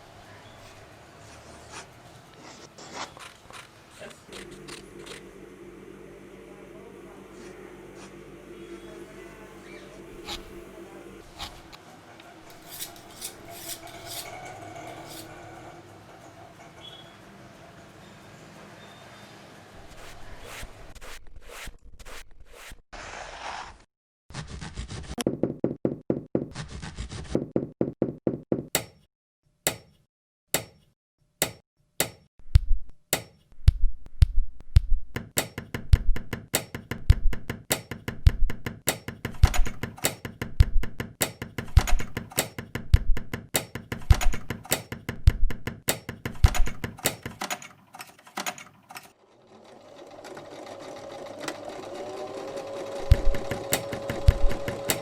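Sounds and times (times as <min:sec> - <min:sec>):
machine motor humming: 0:04.3 - 0:11.8, 0:49.2 - 0:55.0
low rhythmic knocks: 0:32.5 - 0:47.0, 0:53.0 - 0:55.0
hammer clicking: 0:33.2 - 0:47.7
stitching machine clicking: 0:45.9 - 0:55.0.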